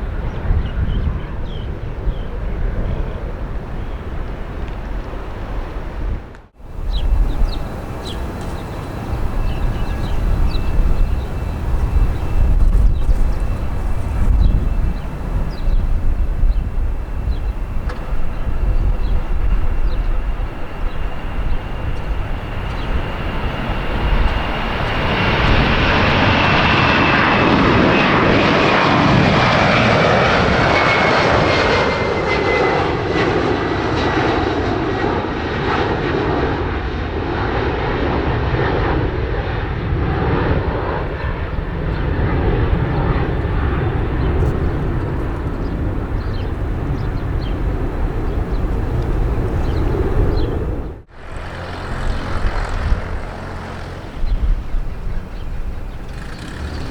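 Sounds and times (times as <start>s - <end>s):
jet engine roar: 0.0s - 56.9s
engine whine falling in pitch: 6.6s - 33.6s, 40.2s - 56.9s.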